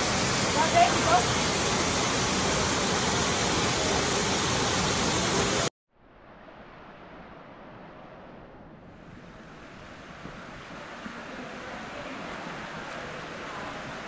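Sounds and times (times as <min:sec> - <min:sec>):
dull hiss: 0:00.0 - 0:05.7
rush of falling water: 0:00.0 - 0:05.7, 0:09.1 - 0:14.0.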